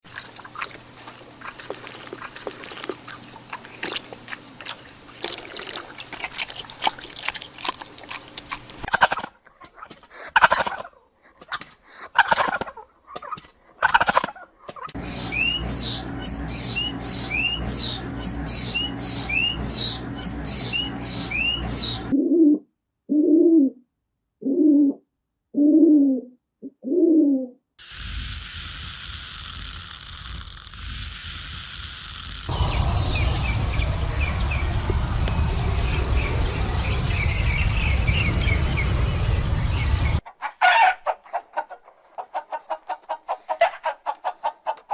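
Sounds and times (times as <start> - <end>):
crackly clicking: 0.2 - 8.9, 27.8 - 40.2
short rising bird chirps: 15.0 - 22.2, 32.5 - 40.2
steady hiss: 27.8 - 40.2.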